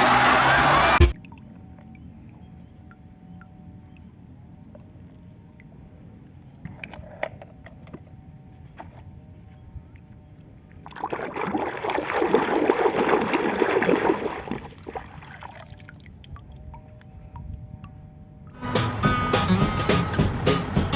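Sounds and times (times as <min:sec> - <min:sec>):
water splashing: 0:10.8 - 0:17.0.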